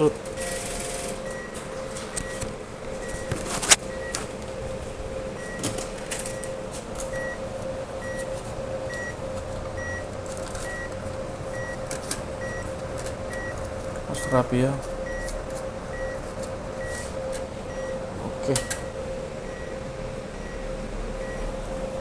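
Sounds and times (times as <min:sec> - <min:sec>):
short machine beeps: 0:00.0 - 0:03.3, 0:03.9 - 0:04.3, 0:05.4 - 0:08.3, 0:09.8 - 0:11.8, 0:13.3 - 0:16.2, 0:16.8 - 0:19.8
machine hum: 0:00.0 - 0:22.0.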